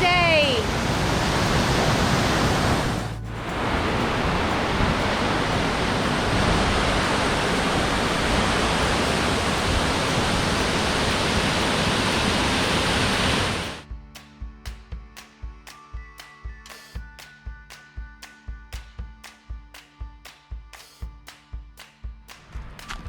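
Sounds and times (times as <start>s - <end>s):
waterfall rushing: 0.0s - 13.8s
background music: 0.0s - 23.0s.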